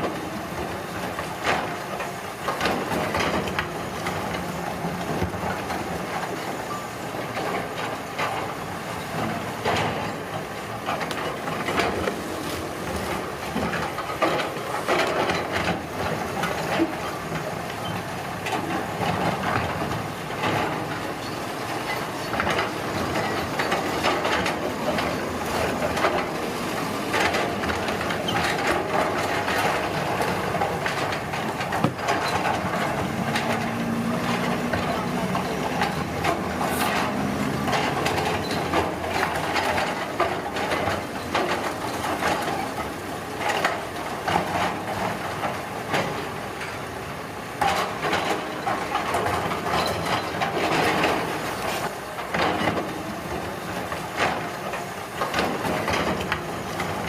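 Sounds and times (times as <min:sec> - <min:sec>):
construction machinery engine: 0:00.0 - 0:57.0
knocks and clatters of material: 0:00.0 - 0:57.0
rumbling scraping din: 0:22.5 - 0:40.9.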